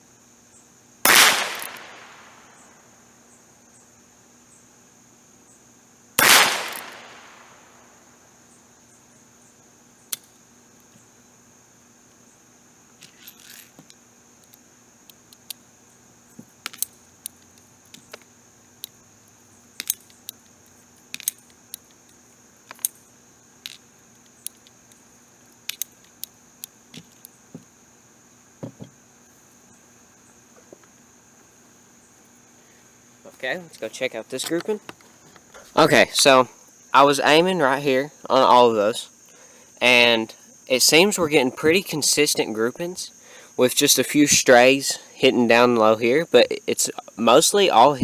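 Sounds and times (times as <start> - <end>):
crickets chirring: 0.0 - 48.0
revolver gunshot: 1.1 - 2.6, 6.2 - 7.8
small sharp clicks: 1.1 - 2.6, 6.2 - 7.8.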